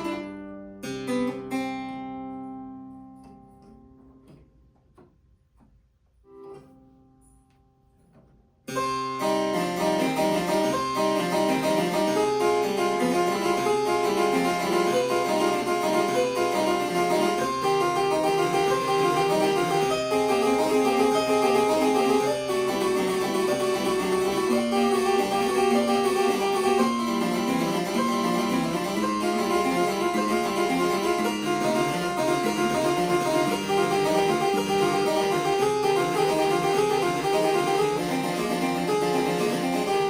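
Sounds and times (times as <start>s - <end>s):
harpsichord music: 8.7s - 40.0s.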